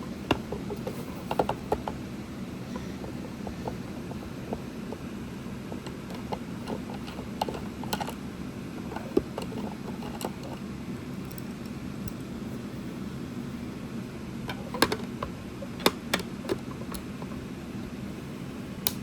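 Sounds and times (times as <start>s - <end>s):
steady low hum: 0.0s - 19.0s
tools clicking and tapping: 0.3s - 2.0s, 5.7s - 8.2s.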